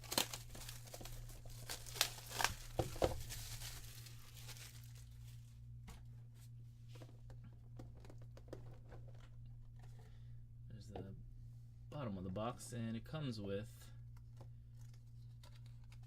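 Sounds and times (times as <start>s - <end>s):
packaging tearing and crinkling: 0.0s - 5.4s
low electrical hum: 0.0s - 16.0s.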